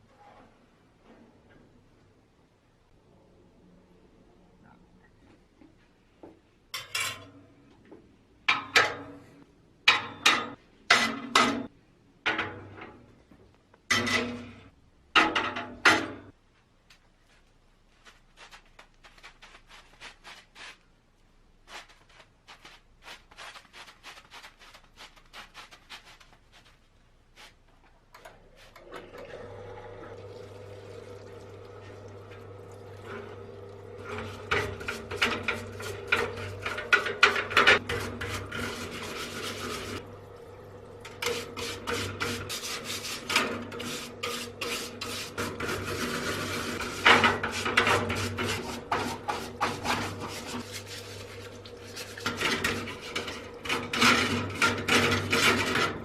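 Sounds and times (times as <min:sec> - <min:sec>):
rough scraping on metal: 0:34.0 - 0:40.0, 0:41.2 - 0:56.0.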